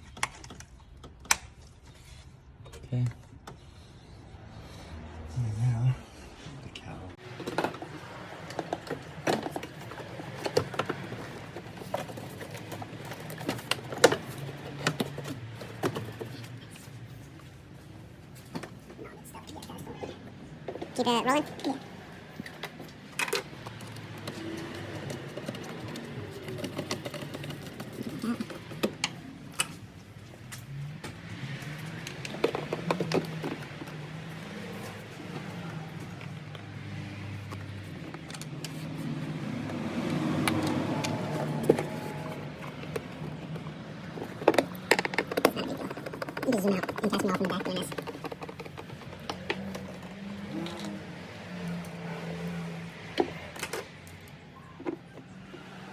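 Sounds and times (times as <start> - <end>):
handling clicks and knocks: 7.2 - 19.8, 20.6 - 55.8
car engine idling: 21.9 - 52.9.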